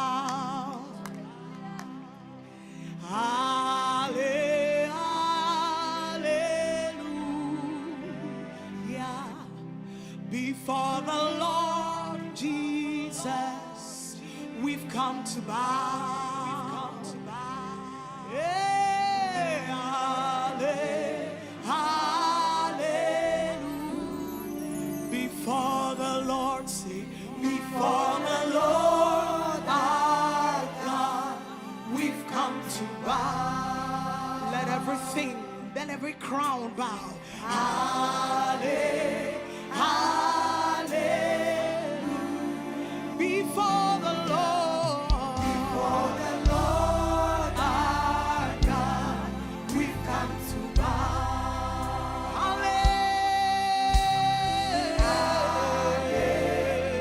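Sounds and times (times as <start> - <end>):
gospel singing: 0.0 - 57.0
steady musical accompaniment: 0.0 - 57.0
band with bass: 44.4 - 57.0.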